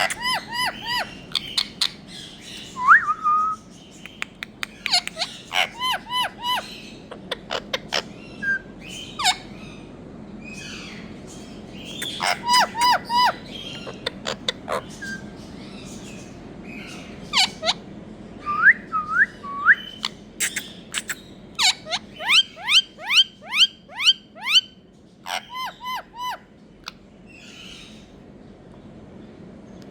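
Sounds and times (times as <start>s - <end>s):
parakeet sharp calls: 0.0s - 2.8s, 4.0s - 9.7s, 11.8s - 17.8s, 19.8s - 26.4s
parakeet rising whistles: 2.7s - 3.7s, 18.4s - 20.1s.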